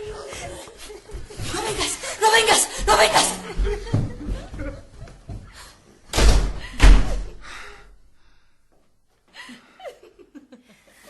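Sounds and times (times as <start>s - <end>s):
person gasping: 7.4s - 8.6s.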